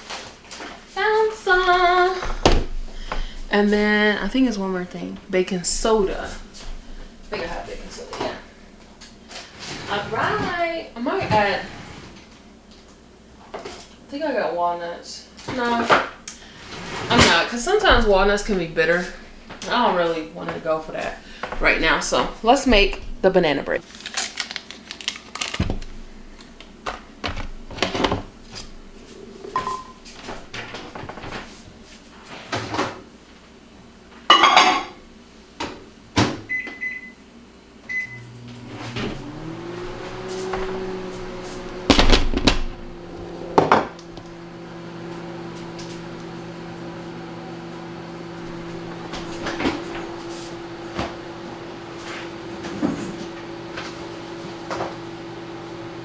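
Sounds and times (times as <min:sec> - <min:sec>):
microwave oven humming: 0:00.4 - 0:14.7, 0:15.6 - 0:23.8, 0:24.6 - 0:56.0
keypad beeps: 0:36.5 - 0:37.2, 0:37.9 - 0:38.2.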